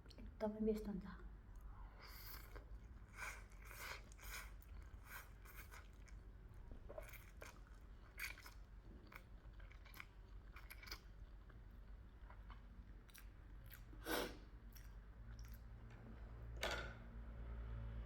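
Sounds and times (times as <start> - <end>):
person chewing food: 2.1 - 15.8.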